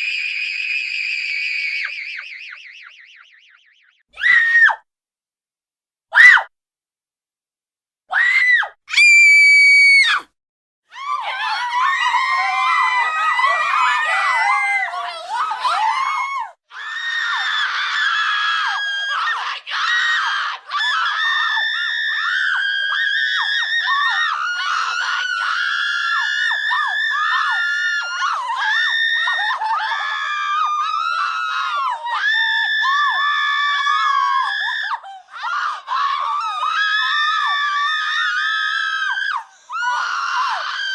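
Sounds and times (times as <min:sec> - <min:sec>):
group of children screaming: 0:00.0 - 0:02.6, 0:04.2 - 0:04.8, 0:06.2 - 0:06.5, 0:08.1 - 0:10.3, 0:10.9 - 0:40.9
child screaming: 0:08.1 - 0:10.3, 0:10.9 - 0:17.9.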